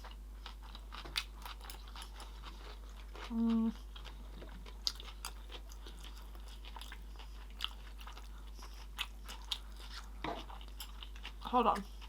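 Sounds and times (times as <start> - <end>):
person chewing food: 0.0 - 12.0.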